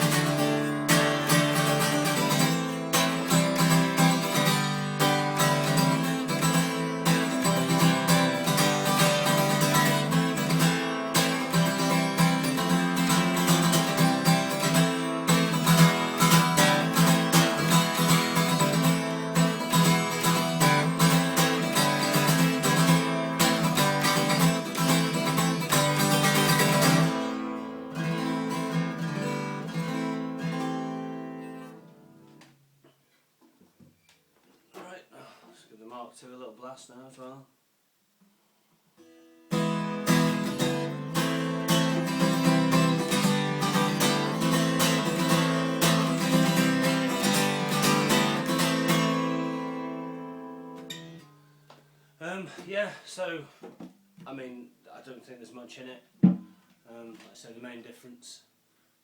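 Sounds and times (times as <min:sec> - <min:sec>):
acoustic guitar strumming: 0:00.0 - 0:33.0, 0:39.0 - 0:52.7.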